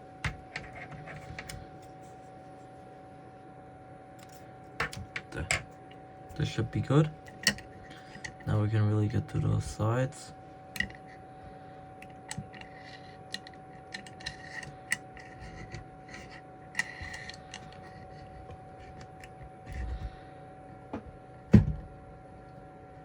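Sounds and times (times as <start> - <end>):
faint steady hum: 0.0 - 23.0
tools clicking and tapping: 13.3 - 17.9
dull thump: 20.9 - 21.9.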